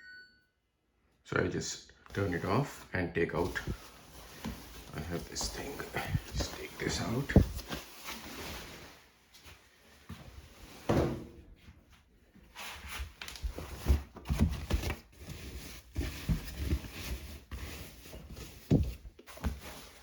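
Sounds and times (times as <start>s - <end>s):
blankets rustling: 3.3s - 10.8s.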